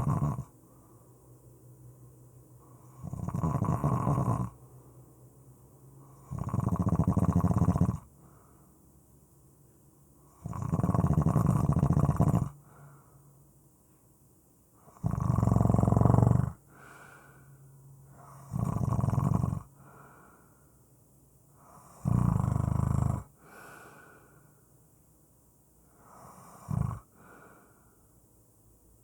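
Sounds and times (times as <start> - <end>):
loud snoring: 0.0 - 0.5, 2.7 - 4.6, 6.1 - 8.1, 10.3 - 12.6, 14.8 - 17.1, 18.1 - 19.8, 21.6 - 23.8, 26.0 - 27.4
quiet breaths: 0.0 - 29.0.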